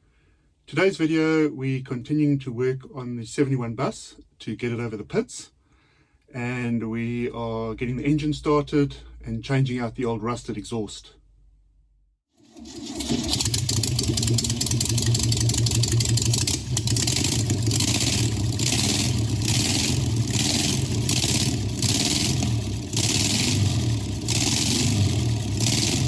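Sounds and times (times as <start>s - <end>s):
engine starting and revving: 12.4s - 26.0s.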